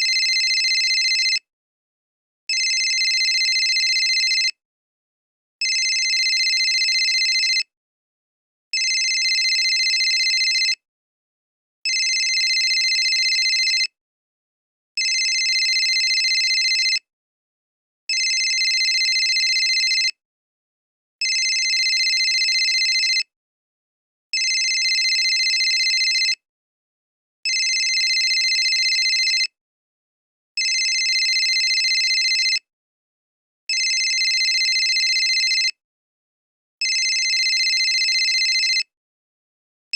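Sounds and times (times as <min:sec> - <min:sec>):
cell phone ringing: 0:00.0 - 0:01.4, 0:02.5 - 0:04.5, 0:05.6 - 0:07.6, 0:08.8 - 0:10.8, 0:11.9 - 0:13.9, 0:15.0 - 0:17.0, 0:18.1 - 0:20.1, 0:21.2 - 0:23.2, 0:24.4 - 0:26.4, 0:27.5 - 0:29.5, 0:30.6 - 0:32.6, 0:33.7 - 0:35.7, 0:36.8 - 0:38.8.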